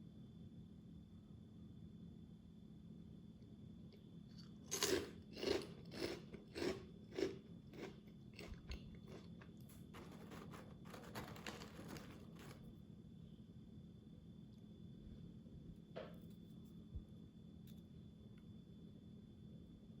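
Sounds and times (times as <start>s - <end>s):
person chewing crunchy snack: 4.4s - 12.6s.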